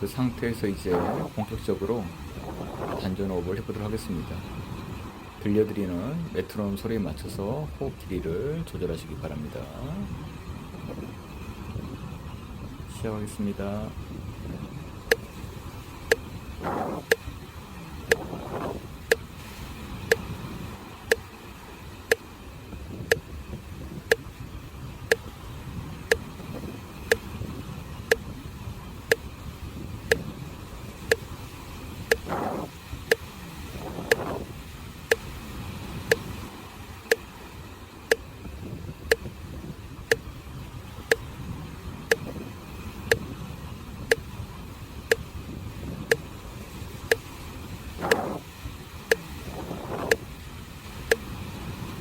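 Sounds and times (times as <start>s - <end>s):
sea waves: 15.1s - 52.0s
metronome clicking: 32.1s - 33.2s, 36.1s - 36.3s, 42.1s - 42.3s, 48.0s - 48.4s.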